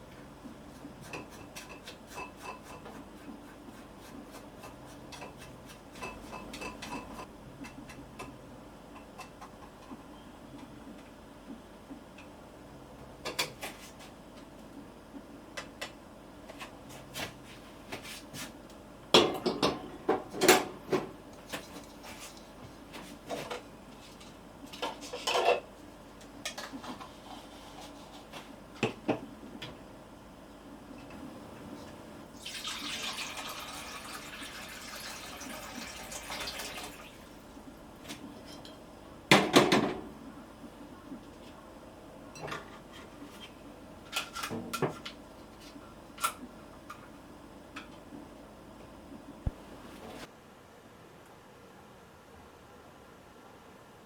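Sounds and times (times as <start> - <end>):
dishes and cutlery clinking: 5.1 - 8.4.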